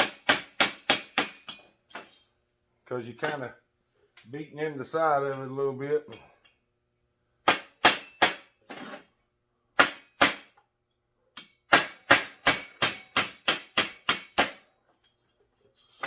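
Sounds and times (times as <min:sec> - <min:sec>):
hammer tapping on metal: 0:11.4 - 0:14.6.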